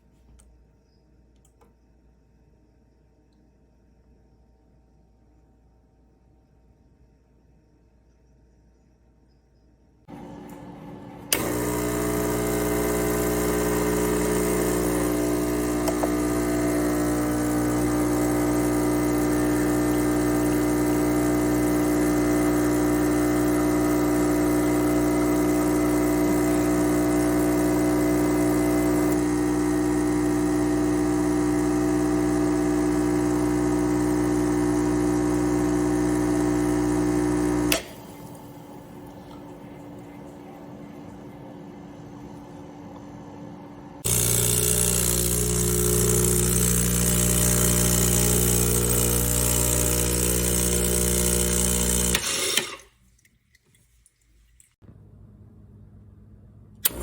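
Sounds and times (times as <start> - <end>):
espresso machine pump buzzing: 10.1 - 52.9.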